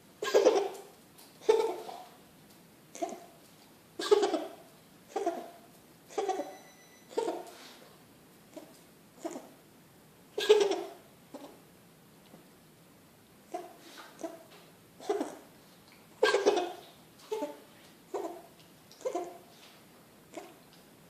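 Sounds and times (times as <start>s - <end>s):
cat coughing: 4.0s - 4.4s.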